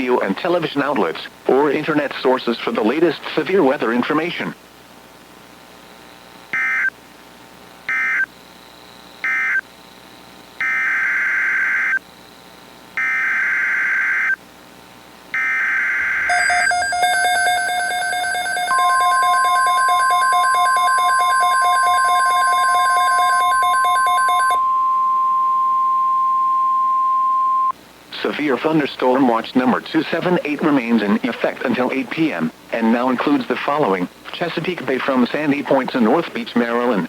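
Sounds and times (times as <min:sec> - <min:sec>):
steady weather radio alert tone: 0:16.3 - 0:32.2.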